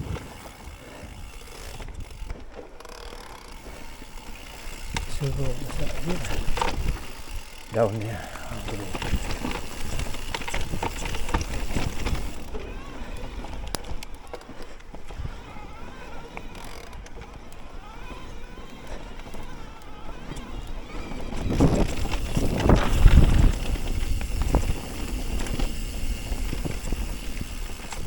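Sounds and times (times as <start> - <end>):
bike rattling and knocking: 0.0 - 28.0
bike tyres on dirt: 0.0 - 28.0
wind on microphone: 4.9 - 7.5, 20.5 - 28.0.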